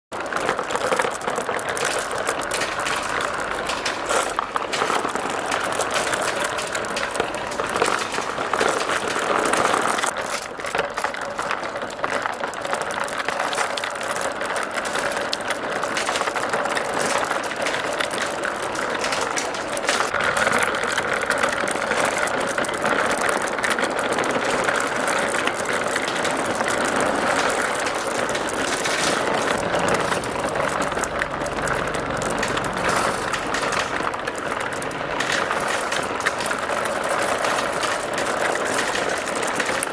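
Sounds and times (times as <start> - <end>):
marbles rattling down plastic tracks: 0.2 - 39.9.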